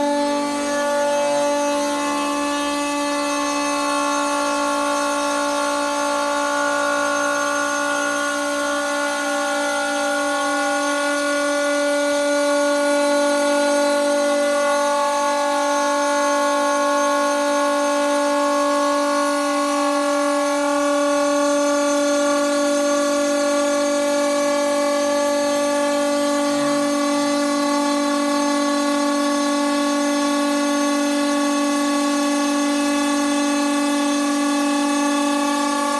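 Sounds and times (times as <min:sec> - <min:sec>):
machine spindle whine: 0:00.0 - 0:35.9.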